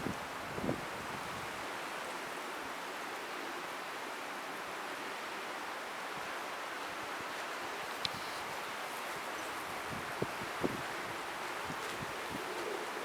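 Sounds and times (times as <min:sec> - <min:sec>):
wind rushing through trees: 0:00.0 - 0:13.0
faint tick: 0:08.0 - 0:08.3.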